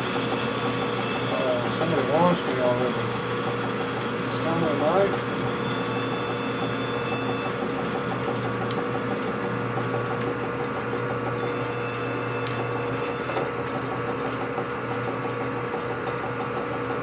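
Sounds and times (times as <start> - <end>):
metal lathe humming and ticking: 0.0 - 17.0
phone ringing: 0.3 - 2.3, 4.8 - 7.7, 11.4 - 13.5.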